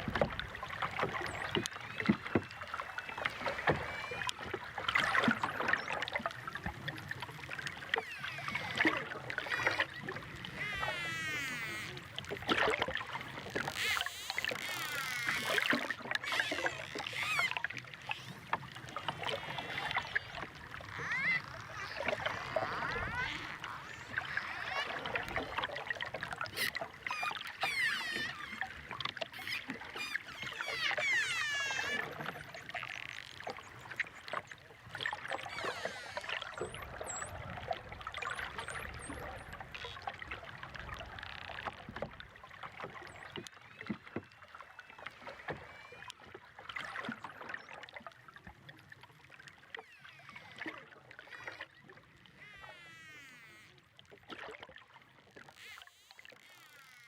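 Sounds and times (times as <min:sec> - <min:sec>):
dolphins whistling underwater: 0:07.9 - 0:12.2, 0:13.6 - 0:40.0.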